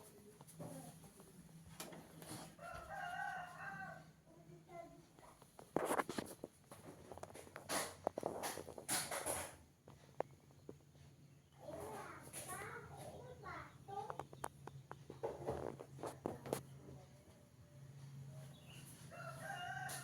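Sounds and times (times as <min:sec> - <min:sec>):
rooster crowing: 0:02.6 - 0:04.1, 0:19.0 - 0:20.0.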